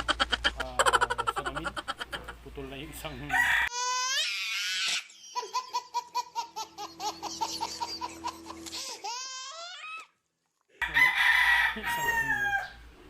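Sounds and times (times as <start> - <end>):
chickens calling: 0.0 - 3.8
rooster crowing: 3.1 - 3.8, 10.8 - 12.8.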